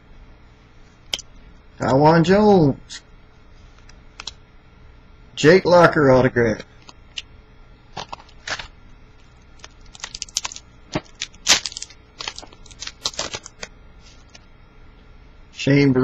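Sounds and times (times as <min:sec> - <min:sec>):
card pack wrapper tearing: 0:08.0 - 0:08.7, 0:09.6 - 0:14.4
crackles and clicks of foil: 0:08.0 - 0:14.4.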